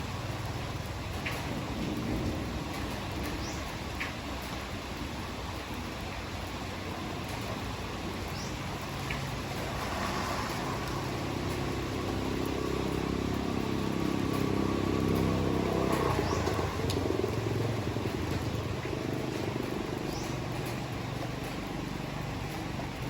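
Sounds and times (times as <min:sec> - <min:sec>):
steady hard rain: 0:00.0 - 0:23.0
vehicle engine approaching: 0:07.2 - 0:23.0.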